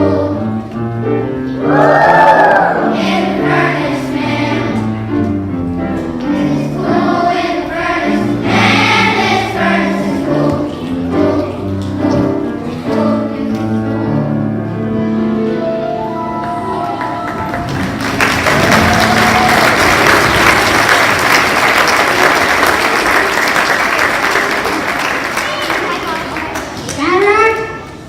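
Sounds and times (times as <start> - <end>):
children's choir singing: 0.0 - 1.0, 1.6 - 25.0
instrumental accompaniment: 2.7 - 21.6.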